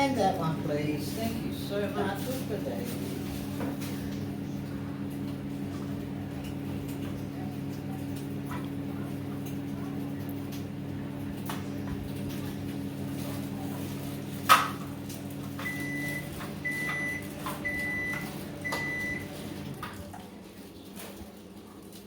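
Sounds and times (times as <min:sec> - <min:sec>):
electrical appliance humming: 0:00.0 - 0:22.0.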